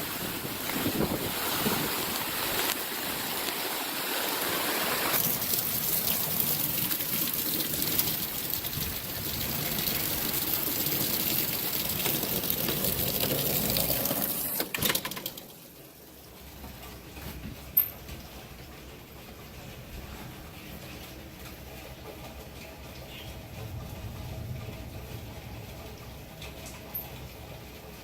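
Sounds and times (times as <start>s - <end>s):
gusting storm wind: 0.0s - 3.8s, 7.9s - 13.8s, 23.4s - 27.7s
heavy rain: 0.0s - 28.0s.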